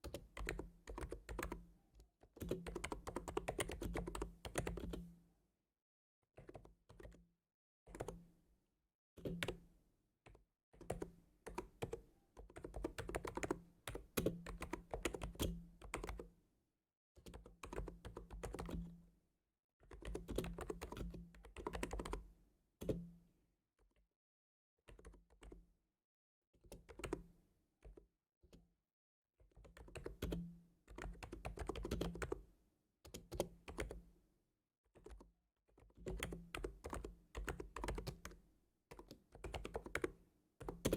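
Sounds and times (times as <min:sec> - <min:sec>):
typing on keyboard: 0:00.0 - 0:01.6, 0:02.4 - 0:05.1, 0:06.4 - 0:07.2, 0:07.9 - 0:08.2, 0:09.2 - 0:09.6, 0:10.3 - 0:16.3, 0:17.2 - 0:18.9, 0:19.8 - 0:22.2, 0:24.9 - 0:25.6, 0:26.7 - 0:27.2, 0:29.5 - 0:34.0, 0:34.9 - 0:40.9.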